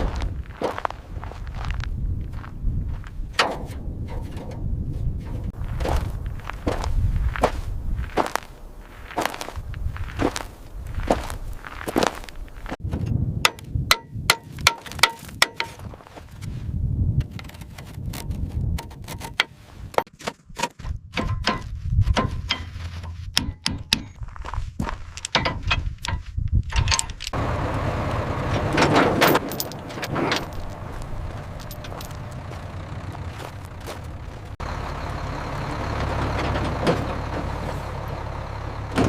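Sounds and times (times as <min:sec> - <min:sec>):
sharp metallic knocks and clanks: 0:03.3 - 0:06.0, 0:13.4 - 0:15.9, 0:18.8 - 0:24.2, 0:25.2 - 0:27.2
low rumble: 0:27.4 - 0:39.0.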